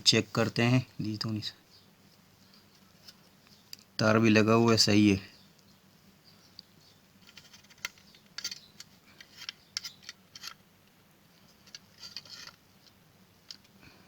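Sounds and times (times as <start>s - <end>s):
small clicks and rattles of parts: 6.5s - 14.0s.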